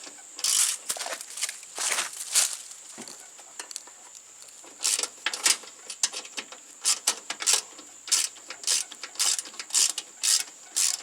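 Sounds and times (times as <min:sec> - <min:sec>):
metal parts scraping and clicking: 0:00.4 - 0:01.1, 0:04.8 - 0:11.0.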